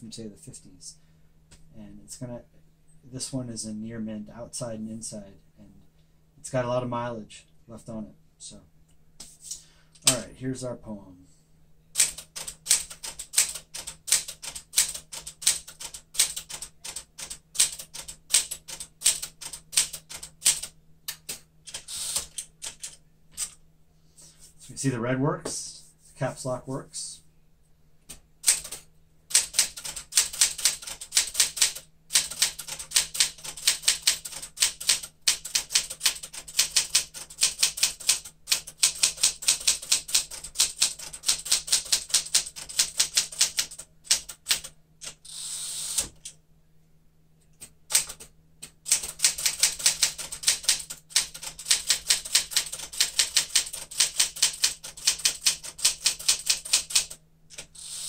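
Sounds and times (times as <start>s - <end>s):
manual typewriter typing: 10.0s - 10.3s, 12.0s - 23.6s, 28.4s - 46.3s, 47.9s - 58.0s.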